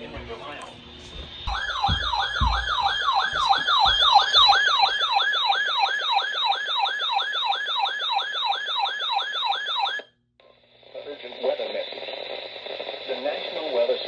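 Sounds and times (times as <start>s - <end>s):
low knocks: 1.2s - 4.9s
electronic alert siren: 1.5s - 10.1s.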